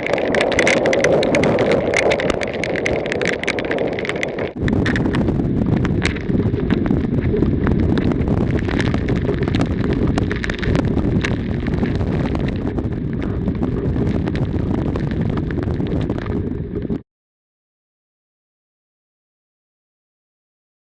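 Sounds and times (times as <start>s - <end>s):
short crackles: 0.0s - 17.0s
strong wind buffeting microphone: 0.0s - 17.0s.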